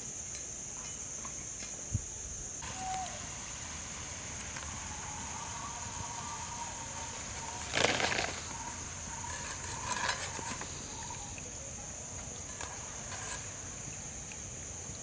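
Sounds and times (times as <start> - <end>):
high-pitched insect drone: 2.6 - 14.9
rustling or scraping noise: 6.9 - 11.1, 12.4 - 13.9.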